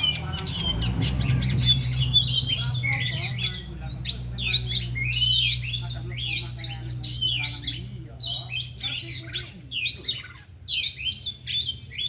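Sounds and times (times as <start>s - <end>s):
birds singing: 0.0s - 12.0s.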